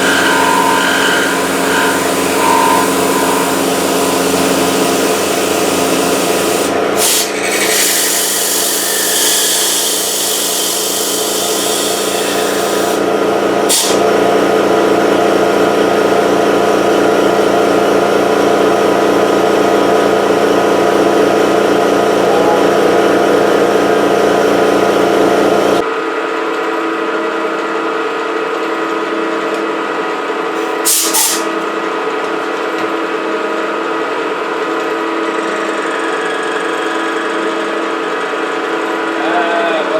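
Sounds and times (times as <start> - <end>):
milling machine cutting metal: 0.0 - 14.2, 30.6 - 31.5.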